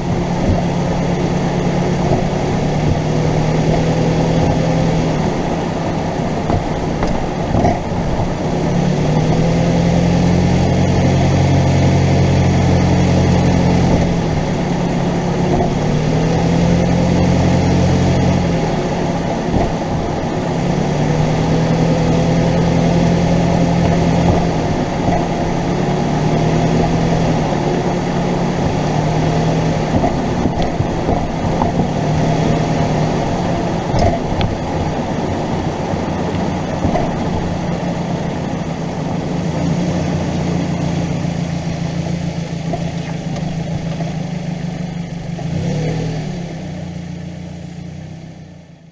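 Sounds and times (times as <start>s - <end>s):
car engine driving: 0.0s - 48.9s
suspension clunks: 0.0s - 48.9s.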